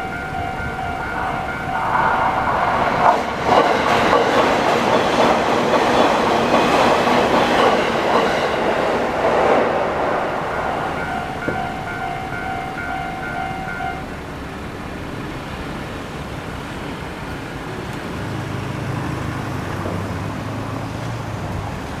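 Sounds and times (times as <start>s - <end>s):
train wheels clattering on rails: 0.0s - 14.3s
crossing warning bell dinging: 0.0s - 15.1s.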